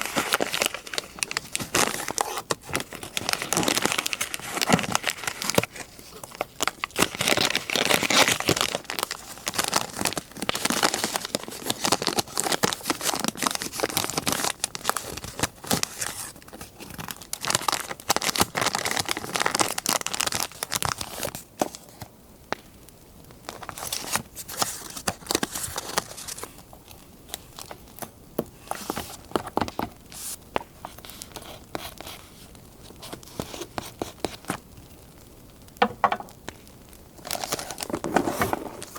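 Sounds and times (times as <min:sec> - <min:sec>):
paper crinkling and tearing: 0:00.0 - 0:22.1, 0:23.5 - 0:27.8, 0:37.2 - 0:38.9.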